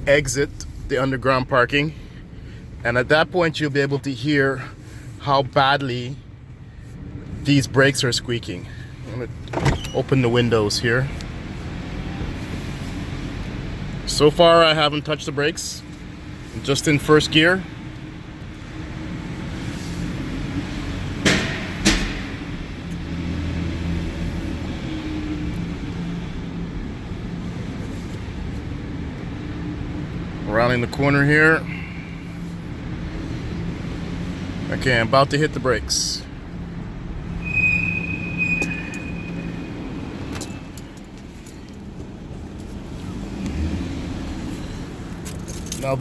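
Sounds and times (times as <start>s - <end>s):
brake squeal: 6.5s - 14.9s, 22.3s - 29.2s, 30.5s - 41.9s, 42.6s - 46.0s
sharp knocks: 21.2s - 22.4s.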